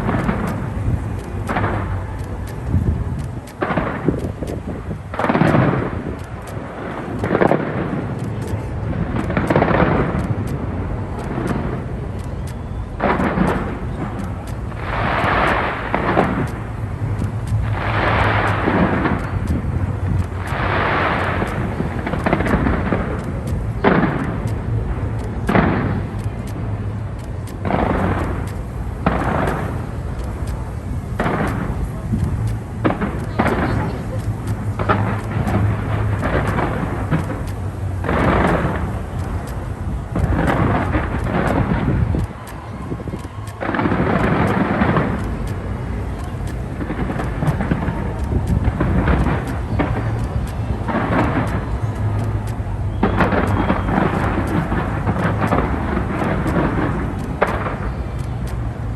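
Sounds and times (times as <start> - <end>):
fireworks crackling: 0.0 - 12.2, 12.9 - 58.9
fireworks booming: 3.0 - 11.8, 13.0 - 16.8, 17.6 - 19.4, 38.0 - 39.1.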